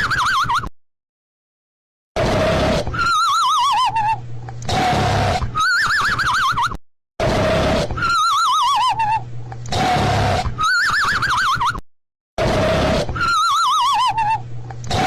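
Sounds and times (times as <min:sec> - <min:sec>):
cartoon snoring with whistle: 0:02.2 - 0:04.1, 0:04.7 - 0:06.5, 0:07.2 - 0:11.8, 0:12.4 - 0:15.0.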